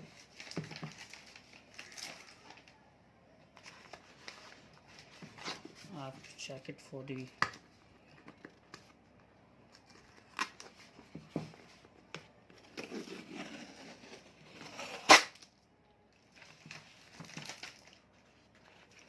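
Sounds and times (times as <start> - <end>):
package rustling and crinkling: 0.0 - 2.8, 16.2 - 19.0.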